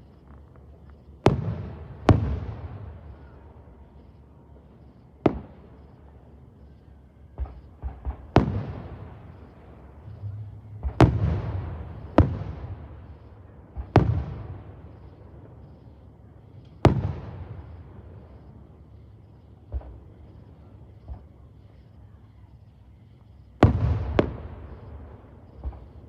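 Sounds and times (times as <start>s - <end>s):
small fireworks pops: 0.0s - 26.0s
fireworks bangs with echo: 7.4s - 15.0s.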